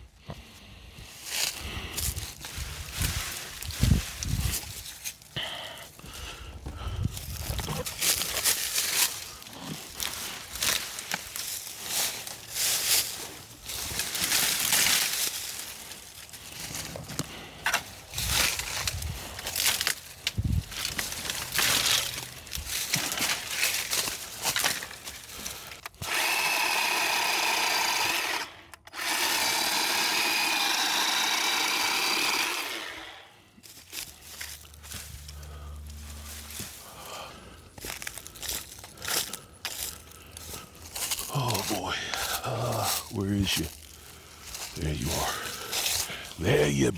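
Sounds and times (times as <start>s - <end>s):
brush rustling: 1.1s - 5.4s, 6.0s - 28.4s, 29.4s - 46.9s
dry branches snapping: 7.2s - 35.4s, 37.8s - 43.0s, 45.4s - 46.2s
electric chainsaw cutting limbs: 7.6s - 16.0s, 17.7s - 36.9s.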